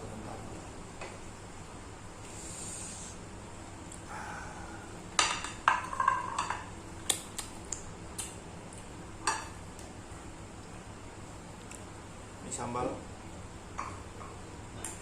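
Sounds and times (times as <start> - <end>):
dishes and cutlery clinking: 5.2 - 6.7.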